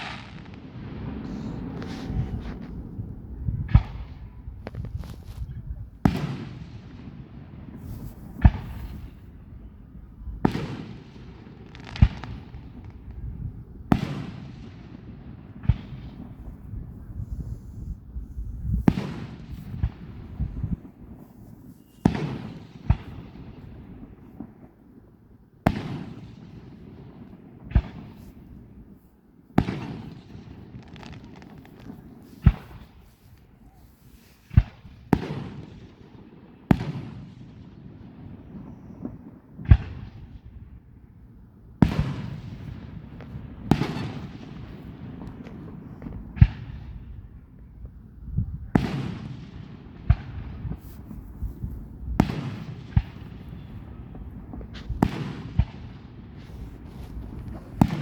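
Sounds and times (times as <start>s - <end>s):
fireworks bursting with echo: 0.0s - 58.0s.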